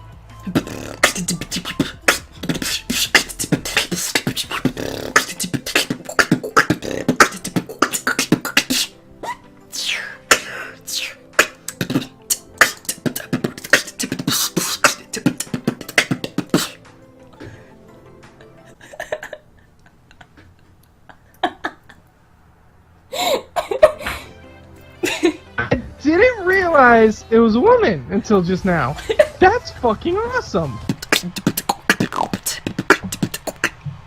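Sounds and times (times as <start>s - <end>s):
person beatboxing: 0.4s - 9.0s, 9.7s - 16.8s, 30.8s - 34.0s.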